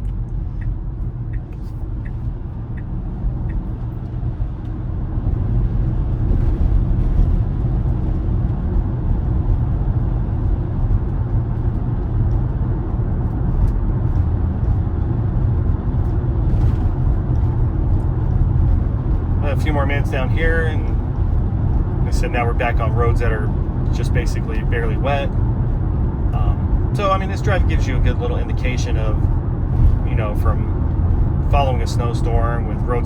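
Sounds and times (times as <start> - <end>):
light ticks: 0.0 - 4.8
tyre and road noise in car cabin: 0.0 - 33.0.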